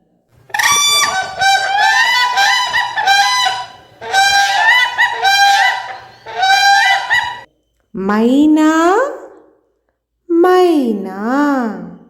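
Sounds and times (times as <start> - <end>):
crane calling: 0.4 - 7.5.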